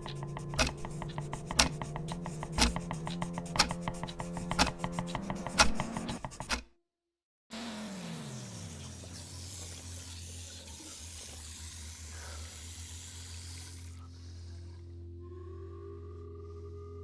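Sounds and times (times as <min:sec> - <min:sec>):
water running from a tap: 0:08.3 - 0:14.0
low steady drone: 0:13.8 - 0:17.0.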